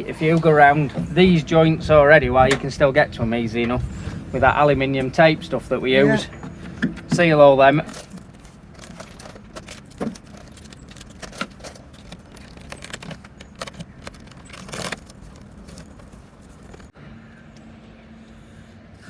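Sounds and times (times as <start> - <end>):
foil tape crinkling and clicking: 7.9 - 16.9.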